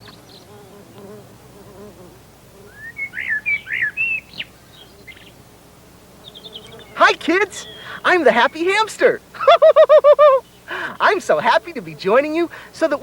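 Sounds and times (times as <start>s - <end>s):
bird chirping: 0.0s - 1.2s, 2.6s - 5.4s, 6.2s - 13.0s.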